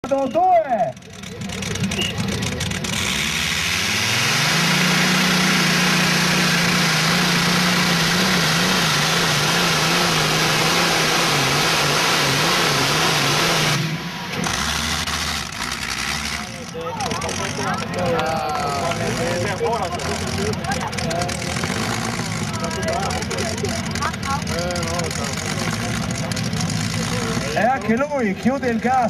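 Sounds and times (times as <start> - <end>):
low engine rumble: 0.0 - 29.0
tractor engine revving high: 0.0 - 29.0.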